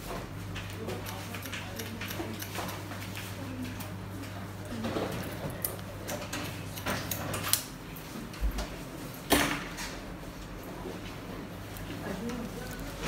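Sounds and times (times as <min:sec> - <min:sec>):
shears snipping hair: 0:00.6 - 0:03.9, 0:05.2 - 0:07.8.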